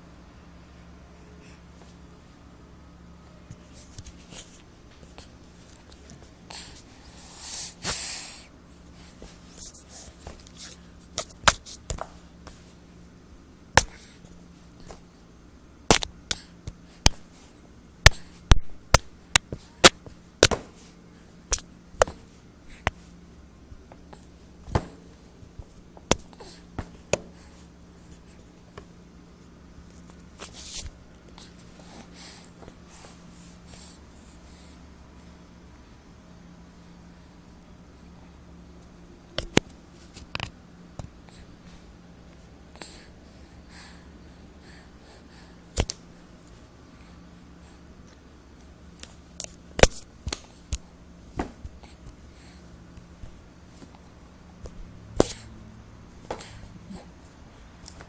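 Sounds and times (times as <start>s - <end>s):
breathy huff: 6.5s - 8.5s.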